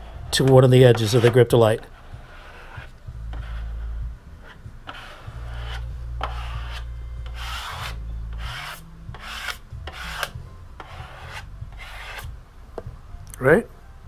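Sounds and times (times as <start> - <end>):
low steady hum: 0.0 - 14.0
squeegee scraping wet surface: 0.9 - 3.7.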